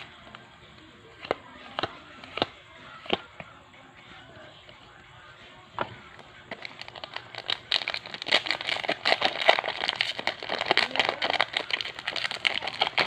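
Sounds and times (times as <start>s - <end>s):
foil wrapper crinkling: 6.5s - 13.0s.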